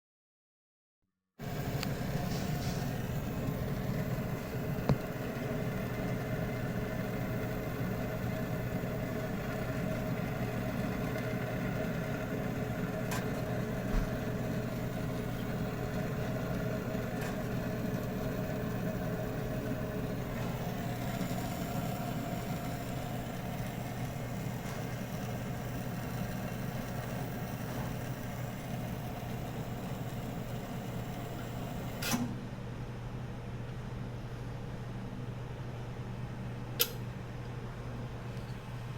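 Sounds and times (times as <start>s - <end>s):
machine hum with held tones: 1.4s - 38.9s.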